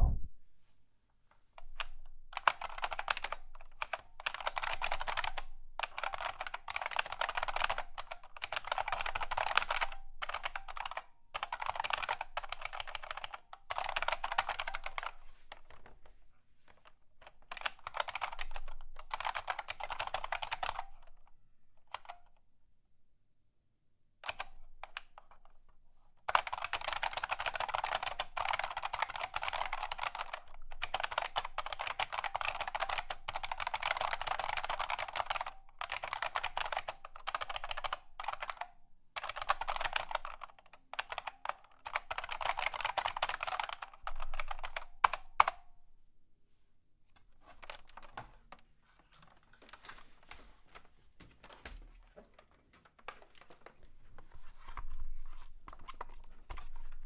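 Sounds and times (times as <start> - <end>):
mechanical keyboard typing: 1.8 - 15.8, 17.2 - 21.1, 21.9 - 22.3, 24.2 - 25.4, 26.2 - 45.7, 47.5 - 50.0.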